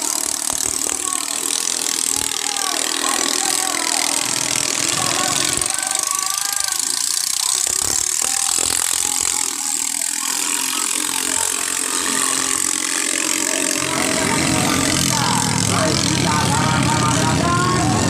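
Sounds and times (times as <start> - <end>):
longtail boat engines rattling: 0.0 - 18.0.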